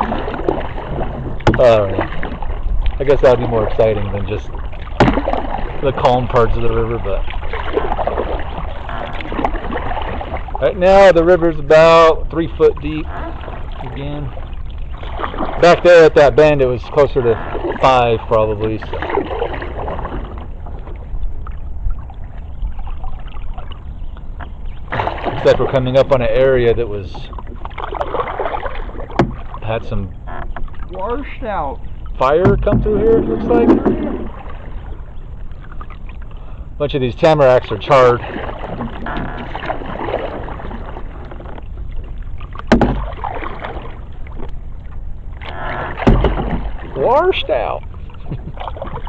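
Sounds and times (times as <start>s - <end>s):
paddle splashing in water: 0.0s - 36.6s, 37.2s - 49.0s
water dripping from paddle: 27.2s - 29.6s
low rumble: 29.7s - 37.2s
sharp knock: 42.7s - 43.1s.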